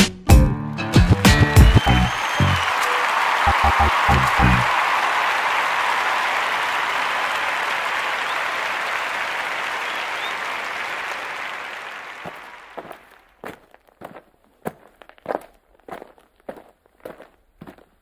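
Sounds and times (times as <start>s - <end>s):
applause: 0.7s - 13.4s.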